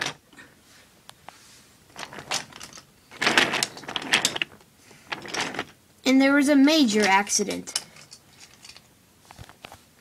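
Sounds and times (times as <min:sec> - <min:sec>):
wooden toy trains clattering: 0:00.0 - 0:00.2, 0:01.9 - 0:05.8.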